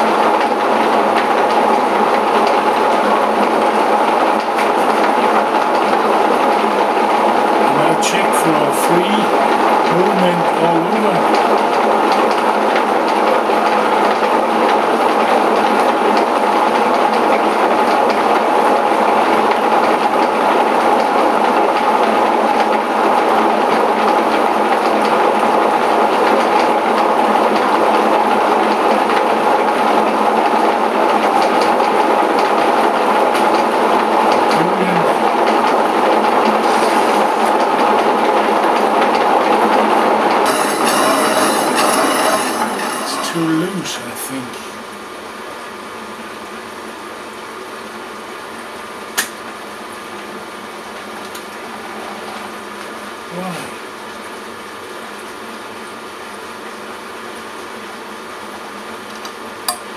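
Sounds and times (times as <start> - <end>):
milling saw cutting metal: 40.5 - 44.5.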